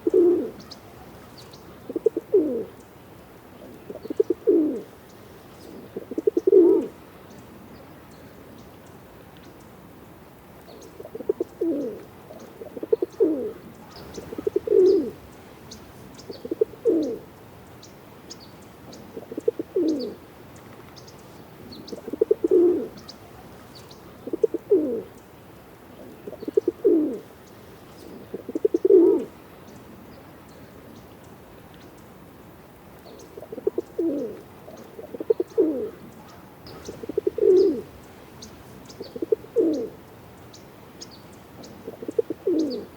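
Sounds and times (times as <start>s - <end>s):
pigeon cooing: 0.0s - 2.8s, 3.6s - 4.9s, 5.7s - 7.0s, 11.0s - 15.3s, 16.3s - 17.3s, 18.9s - 20.2s, 21.7s - 25.2s, 26.0s - 27.2s, 28.0s - 29.3s, 33.4s - 38.0s, 39.0s - 40.0s, 41.6s - 42.9s.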